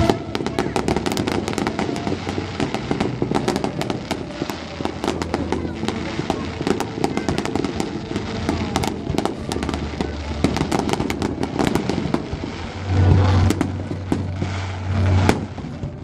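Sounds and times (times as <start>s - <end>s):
fireworks cracks and bangs: 0.0s - 16.0s.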